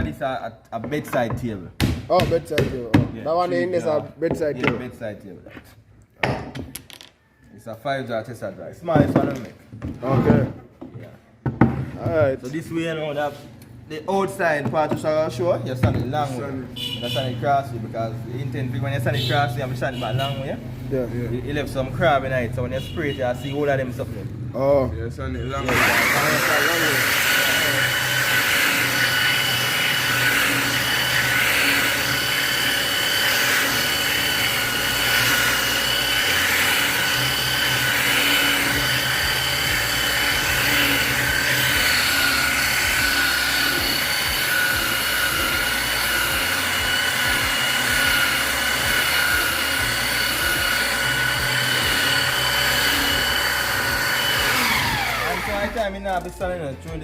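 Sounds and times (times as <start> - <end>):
power sander on wood: 12.0 - 22.4, 25.6 - 56.2.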